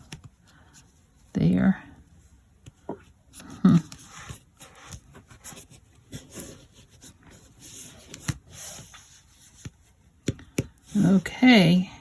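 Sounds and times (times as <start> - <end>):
paper rustling: 3.4 - 9.9.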